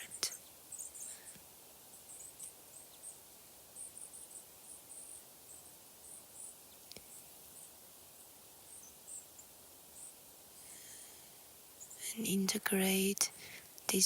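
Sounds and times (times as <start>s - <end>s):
faint high-pitched chirps: 0.0s - 11.2s
soft steady hiss: 0.0s - 14.0s.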